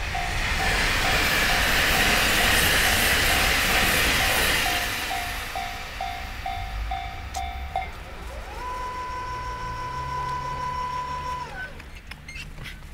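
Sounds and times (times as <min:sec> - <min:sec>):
level-crossing warning bell: 0:00.0 - 0:11.8
steady whine: 0:00.0 - 0:11.9
low engine hum: 0:05.1 - 0:12.9.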